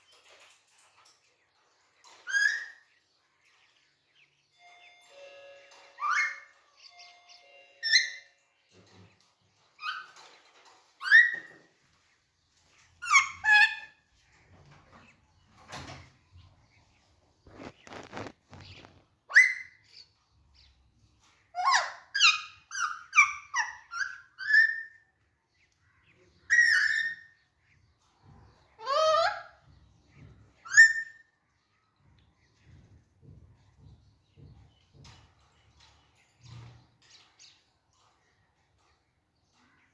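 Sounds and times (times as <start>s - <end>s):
parakeet whistled calls: 6.0s - 6.6s, 19.3s - 19.8s.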